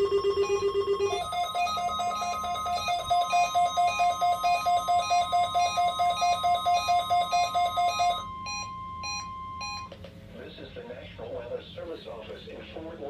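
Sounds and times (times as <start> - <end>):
steady radio warning tone: 0.0 - 9.2
alert receiver rapid beeping: 0.0 - 9.9.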